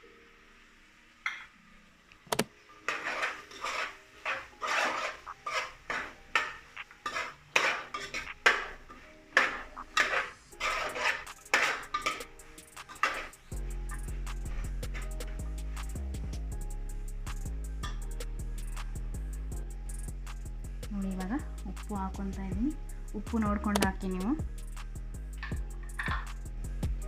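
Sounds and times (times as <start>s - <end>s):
spoon scraping a pan: 2.8s - 15.4s, 25.4s - 26.3s.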